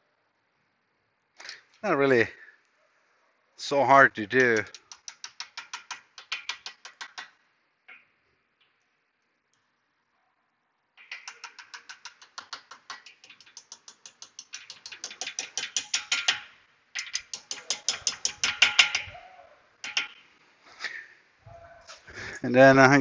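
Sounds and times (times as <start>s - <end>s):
ratchet wrench clicking: 11.0s - 16.4s, 17.0s - 19.1s.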